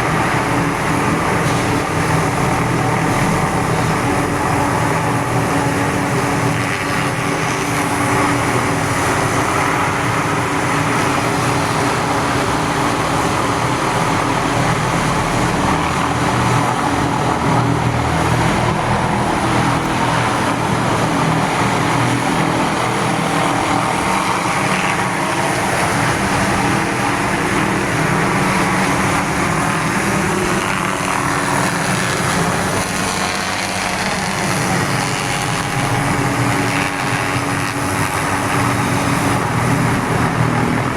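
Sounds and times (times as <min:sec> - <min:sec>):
helicopter rotor noise: 0:00.0 - 0:40.9
helicopter turbine whine: 0:00.0 - 0:40.9.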